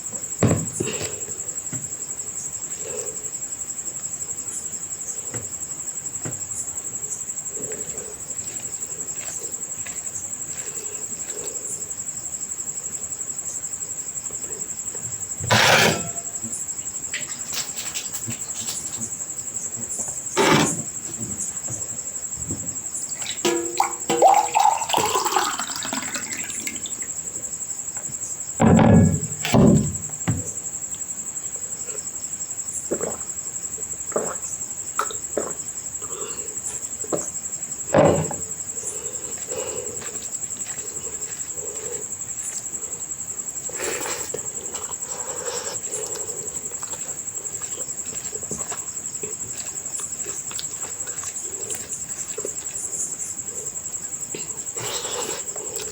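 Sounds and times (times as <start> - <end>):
louder knocks: 0.4 - 0.9, 28.6 - 30.5, 37.9 - 38.5
chewing food: 38.8 - 42.8, 43.6 - 53.8.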